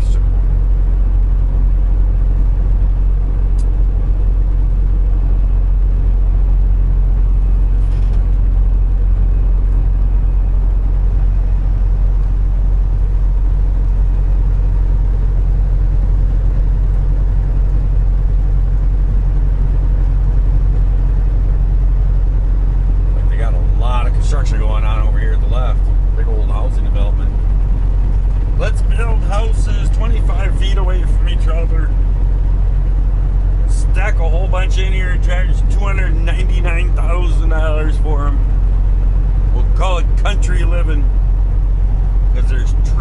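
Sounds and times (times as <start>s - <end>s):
road noise: 0.0s - 43.0s
truck diesel engine running: 0.0s - 43.0s.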